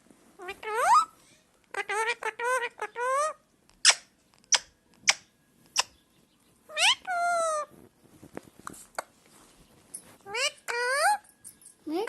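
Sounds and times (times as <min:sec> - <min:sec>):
parrot chirping and meowing: 0:00.4 - 0:05.2, 0:06.7 - 0:07.8, 0:10.2 - 0:11.2.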